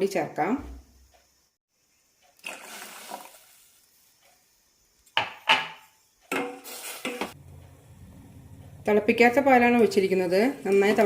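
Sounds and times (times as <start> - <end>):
water pouring into a pan: 2.4 - 3.8
metal cookware clinking: 5.3 - 7.4.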